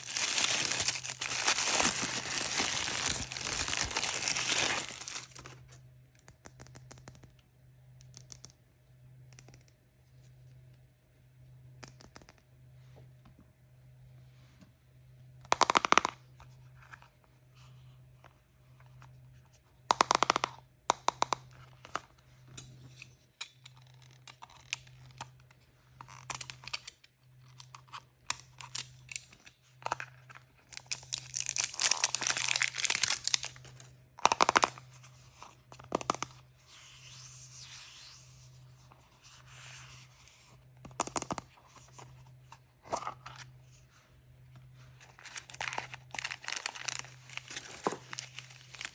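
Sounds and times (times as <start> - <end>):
wrappers tearing and crinkling: 0.0 - 5.6, 30.7 - 33.8, 45.1 - 48.9.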